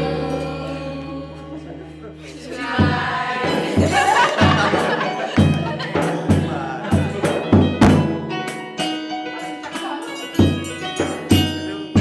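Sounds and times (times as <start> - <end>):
live band music: 0.0 - 12.0
strong drum hits: 2.8 - 8.3.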